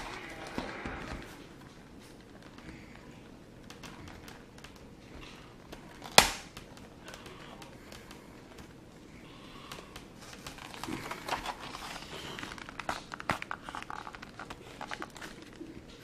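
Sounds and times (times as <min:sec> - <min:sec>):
packaging crinkling and tearing: 0:05.7 - 0:08.7, 0:09.7 - 0:16.0.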